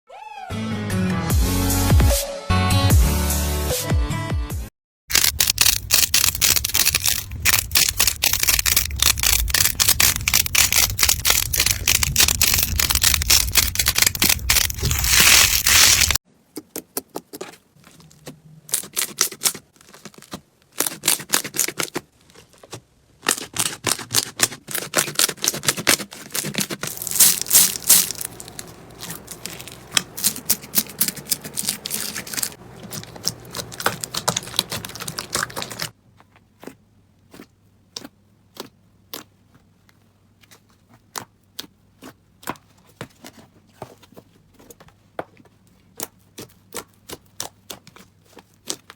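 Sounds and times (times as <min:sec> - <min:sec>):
slime crackling and popping: 0:05.1 - 0:16.2, 0:23.2 - 0:35.9.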